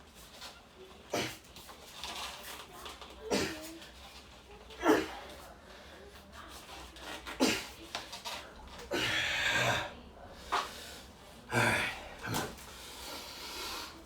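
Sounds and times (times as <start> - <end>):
man breathing hard and grunting: 11.5 - 14.0.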